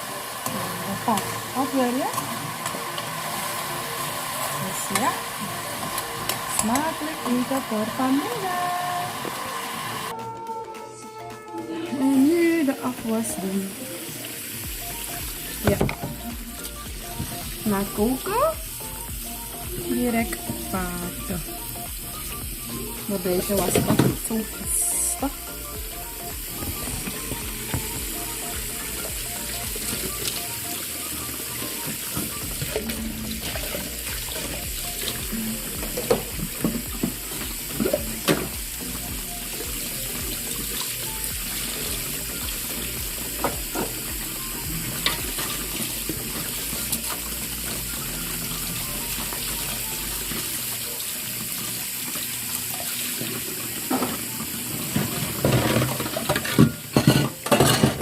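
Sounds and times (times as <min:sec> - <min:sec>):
tap running into a sink: 0:31.8 - 0:38.7
dishes and utensils clattering: 0:53.2 - 0:58.0.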